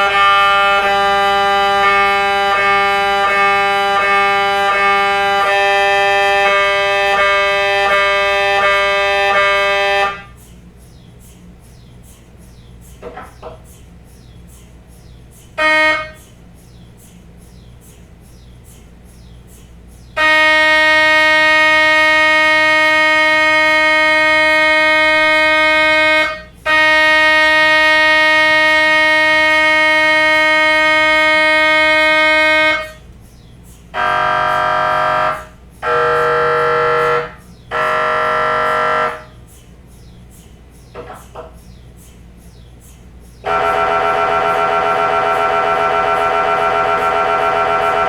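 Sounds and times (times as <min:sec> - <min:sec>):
mri scanner drone: 0:00.0 - 0:48.0
short scanner tones: 0:34.0 - 0:39.3.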